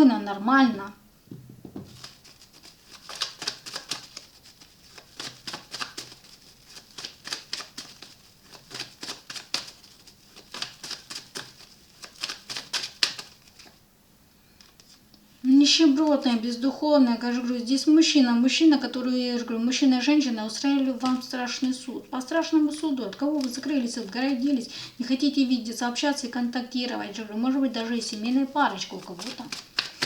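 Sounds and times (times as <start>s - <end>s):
cards being shuffled: 1.3s - 13.8s, 20.8s - 21.8s, 22.8s - 24.4s, 28.0s - 30.0s.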